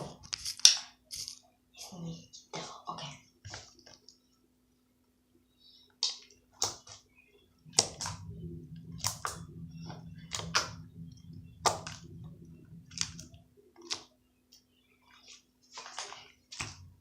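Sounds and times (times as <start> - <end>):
low rumble: 7.6 - 13.7.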